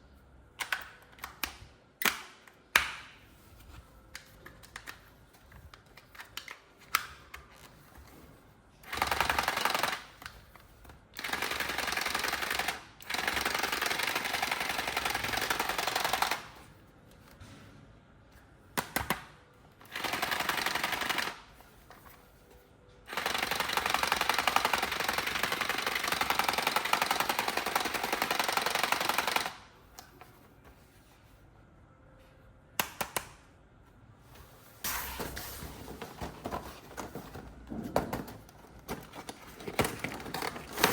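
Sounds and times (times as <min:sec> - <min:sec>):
toy gun rattling: 0:23.2 - 0:29.6.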